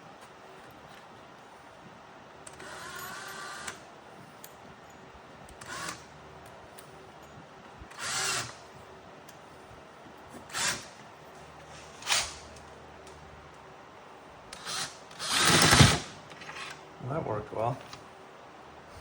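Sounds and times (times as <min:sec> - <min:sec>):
power drill boring: 0:05.6 - 0:06.0, 0:14.6 - 0:16.7.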